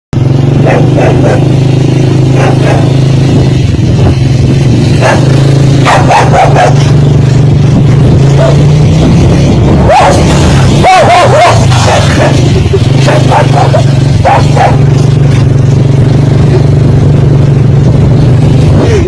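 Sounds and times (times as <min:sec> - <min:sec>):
engine running: 0:00.2 - 0:19.0
dog barking: 0:00.6 - 0:01.6, 0:02.3 - 0:03.0, 0:05.0 - 0:06.9, 0:08.3 - 0:08.7, 0:09.8 - 0:14.9.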